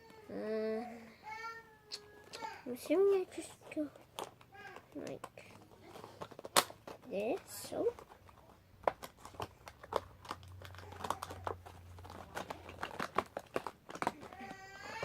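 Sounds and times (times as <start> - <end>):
packaging crinkling and rustling: 2.1 - 15.0
small clicks and taps: 4.1 - 15.0.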